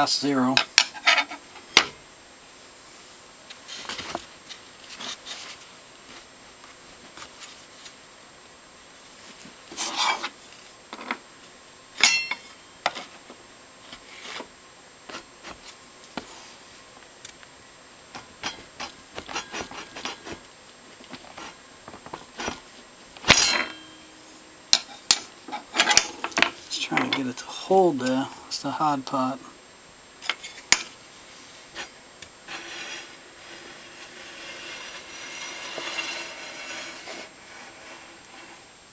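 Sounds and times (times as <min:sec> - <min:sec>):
loud ringing metal clank: 0:12.0 - 0:12.6, 0:23.2 - 0:24.3.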